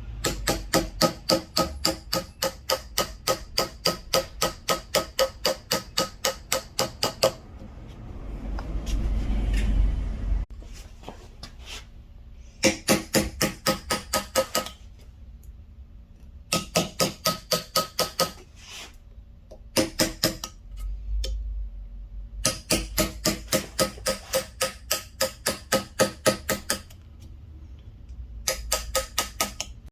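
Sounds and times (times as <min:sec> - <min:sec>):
mallet tapping chisel into wood: 0:00.2 - 0:07.4, 0:16.5 - 0:18.4, 0:22.4 - 0:26.9, 0:28.4 - 0:29.8.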